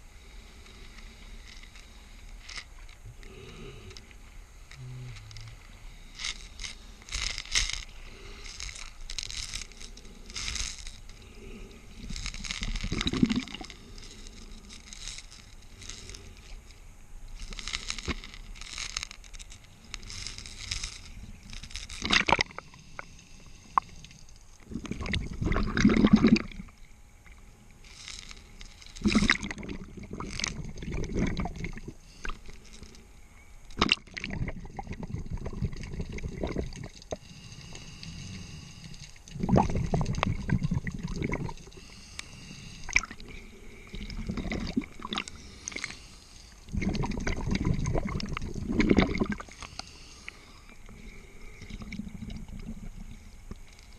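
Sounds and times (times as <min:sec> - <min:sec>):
diver inhaling through regulator: 0:00.0 - 0:16.8, 0:27.8 - 0:33.1, 0:34.4 - 0:53.9
bubbling exhalations: 0:12.0 - 0:13.8, 0:22.0 - 0:22.7, 0:24.7 - 0:26.7, 0:29.0 - 0:32.4, 0:33.8 - 0:37.2, 0:39.3 - 0:42.0, 0:42.8 - 0:46.0, 0:46.7 - 0:49.8, 0:50.9 - 0:53.2.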